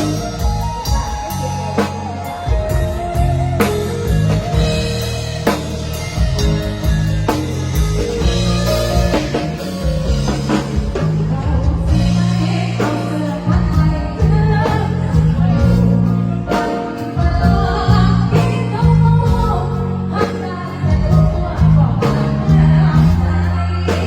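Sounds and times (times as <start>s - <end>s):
drum kit hits: 0.0s - 16.1s
heavy bass line: 0.0s - 16.5s, 17.2s - 20.1s
band over loud sound system: 0.0s - 24.0s
guitar: 0.0s - 24.0s
person singing: 11.0s - 24.0s.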